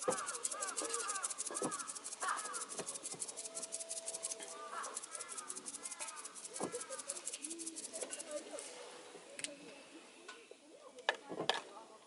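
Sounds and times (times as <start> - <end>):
fast high-pitched ticking: 0.0 - 8.5
birds chirping: 0.0 - 8.6.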